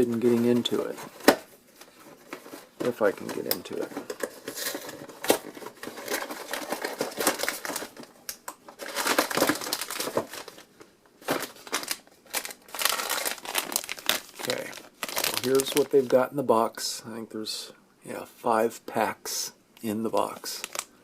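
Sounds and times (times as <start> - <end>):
packaging crinkling: 0.3 - 16.2, 20.2 - 21.0.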